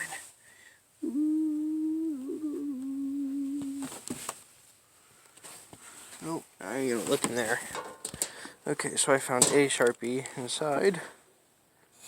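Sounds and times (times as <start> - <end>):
man humming: 0.0 - 0.3, 1.0 - 4.1.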